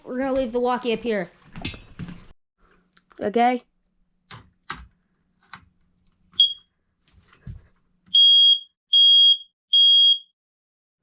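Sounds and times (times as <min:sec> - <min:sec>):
smoke alarm beeping: 0:06.4 - 0:06.7, 0:08.1 - 0:10.4
smoke alarm chirp: 0:06.4 - 0:06.7, 0:08.1 - 0:10.4.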